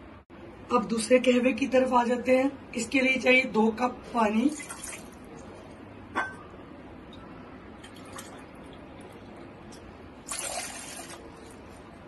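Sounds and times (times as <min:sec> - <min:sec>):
water pouring into a pan: 0:10.3 - 0:11.2.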